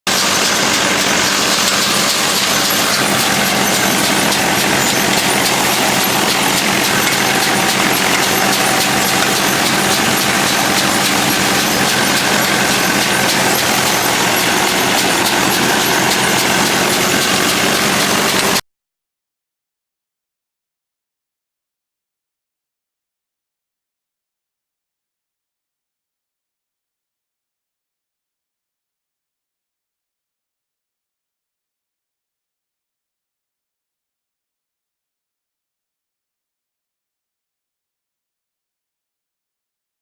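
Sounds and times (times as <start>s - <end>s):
farm machine engine running: 0.1s - 18.6s.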